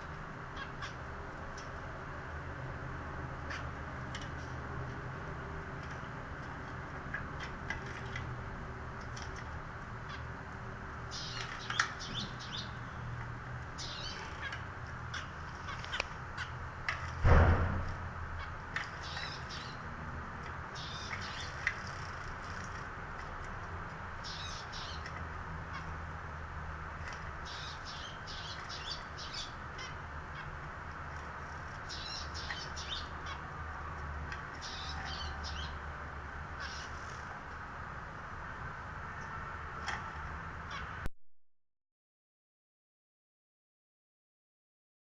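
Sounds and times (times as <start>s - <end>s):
loud thud: 17.2s - 18.0s.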